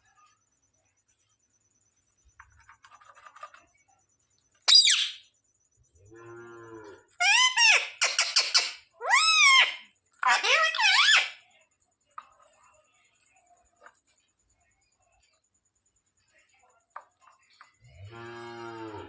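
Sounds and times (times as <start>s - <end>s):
parrot squawking and calling: 4.7s - 5.2s, 7.2s - 11.4s.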